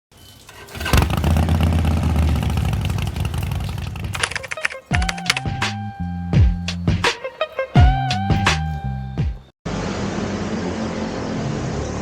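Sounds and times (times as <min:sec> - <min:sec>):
motorcycle engine starting and running: 0:00.2 - 0:07.0
electronic music with heavy beat: 0:04.4 - 0:09.4.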